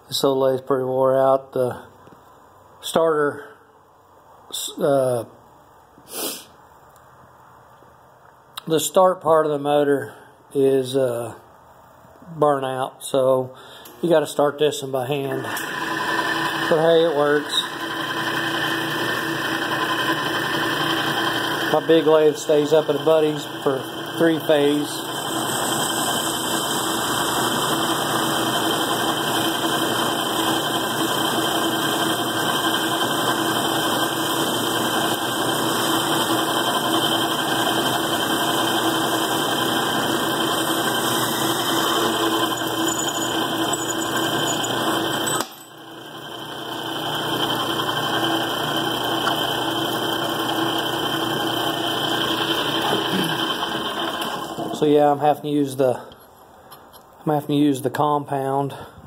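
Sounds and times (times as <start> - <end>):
metal lathe motor humming: 15.4 - 54.8.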